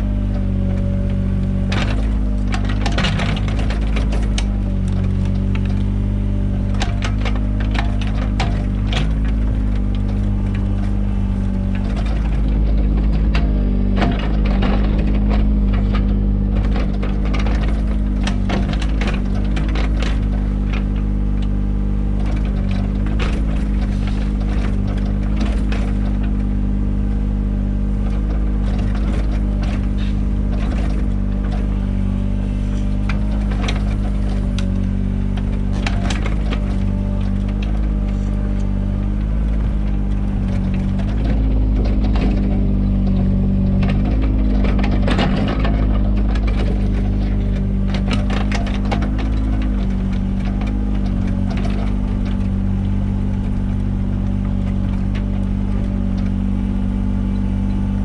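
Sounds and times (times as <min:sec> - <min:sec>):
diesel engine running: 0:00.0 - 0:58.0
bucket scraping through soil: 0:22.3 - 0:26.9, 0:27.8 - 0:58.0.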